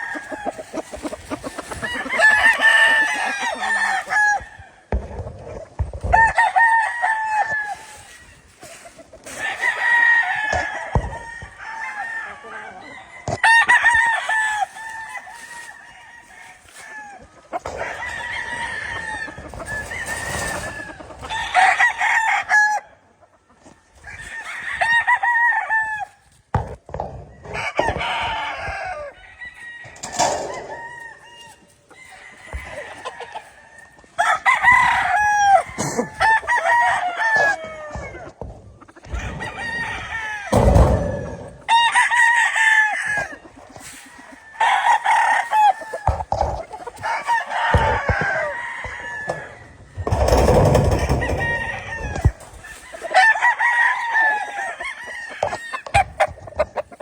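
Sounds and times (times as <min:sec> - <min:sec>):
chickens clucking: 0:00.0 - 0:25.4, 0:26.0 - 0:57.0
roosters crowing: 0:00.0 - 0:57.0.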